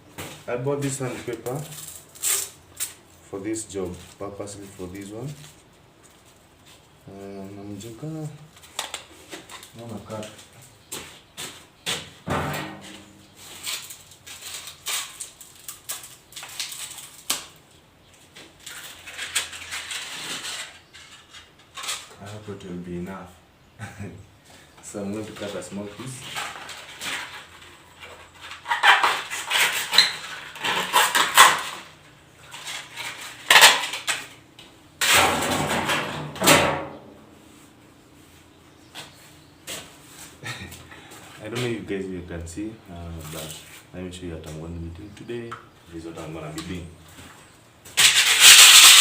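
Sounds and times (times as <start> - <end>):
sandpaper crinkling and rustling: 0.6 - 7.0, 13.0 - 17.4, 18.2 - 22.8, 24.9 - 34.2, 43.1 - 43.9, 48.0 - 49.0.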